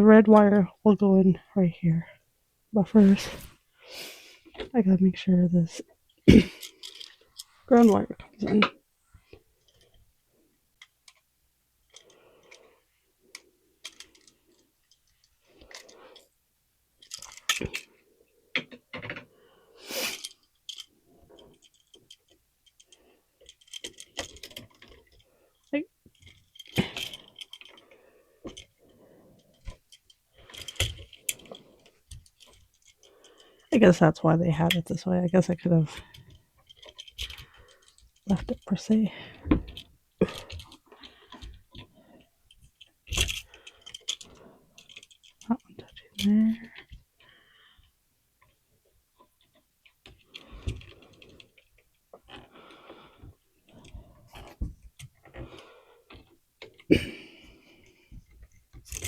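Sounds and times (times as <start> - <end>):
hands handling wiring clicks: 20.1 - 25.2, 29.5 - 33.1, 39.4 - 47.1, 58.2 - 59.0.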